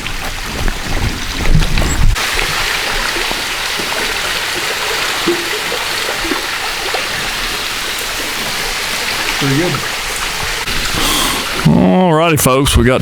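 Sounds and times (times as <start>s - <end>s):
waterfall splashing into stream: 0.0s - 11.7s.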